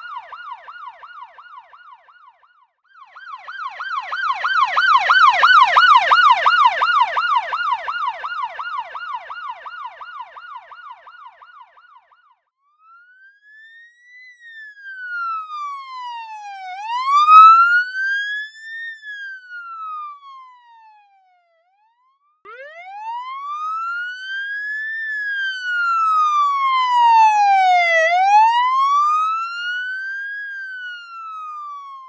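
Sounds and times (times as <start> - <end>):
fast yelp police siren: 0.0 - 32.0
slow wail police siren: 0.0 - 32.0.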